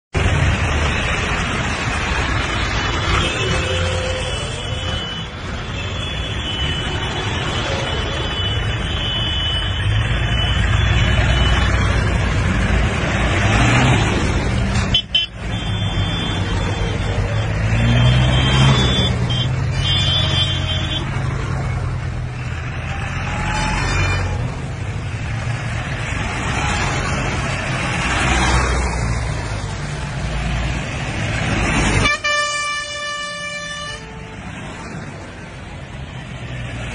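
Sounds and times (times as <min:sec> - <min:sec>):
engines and traffic rumble: 0:00.1 - 0:36.9
vehicle horns honking: 0:03.1 - 0:11.9, 0:14.8 - 0:21.2, 0:31.8 - 0:34.4.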